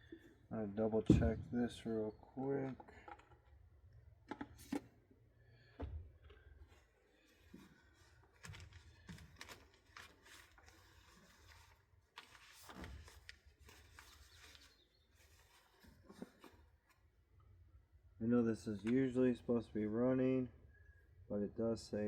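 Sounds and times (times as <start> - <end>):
clicks and knocks of handling parts: 2.2 - 4.9.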